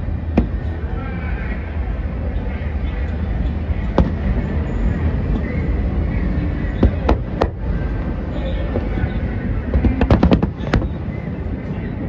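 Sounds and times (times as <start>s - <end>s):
steady low rumble: 0.0s - 12.0s
distant fireworks cracking: 3.9s - 4.5s, 6.8s - 7.8s, 9.7s - 11.1s.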